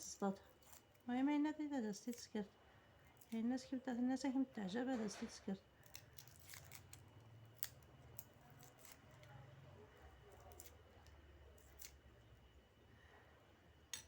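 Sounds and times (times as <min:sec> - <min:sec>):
faint low hum: 0:00.0 - 0:14.0
scissors snipping: 0:05.2 - 0:09.4, 0:10.3 - 0:12.0.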